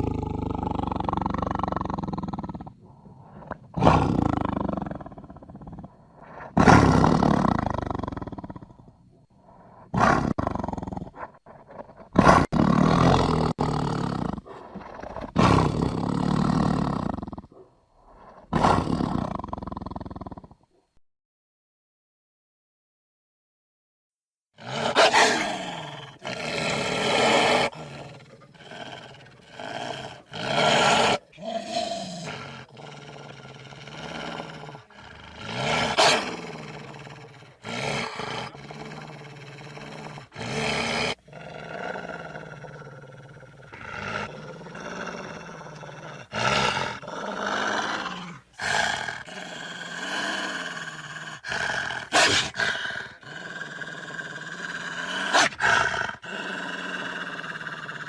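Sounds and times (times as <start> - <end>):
creature growls and roars: 0.0 - 8.8, 9.8 - 20.6, 24.6 - 58.0.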